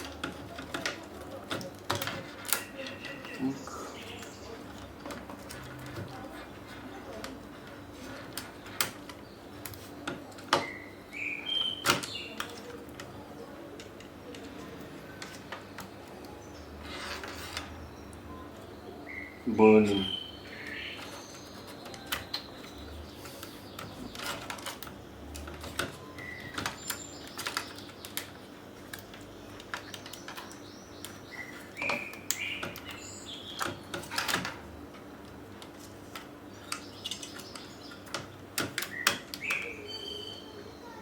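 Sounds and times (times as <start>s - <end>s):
bird chirps: 10.6s - 12.5s, 17.8s - 24.2s, 26.0s - 28.2s, 29.4s - 33.9s, 38.8s - 41.0s.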